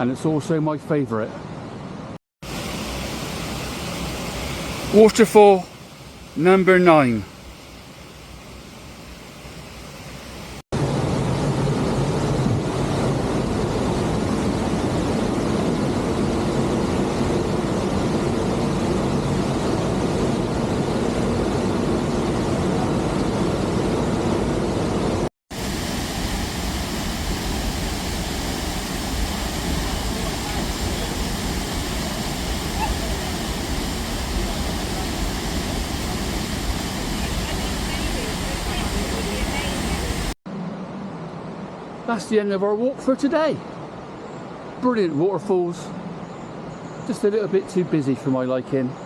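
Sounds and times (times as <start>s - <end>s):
waterfall rushing: 2.4s - 7.5s, 25.5s - 40.4s.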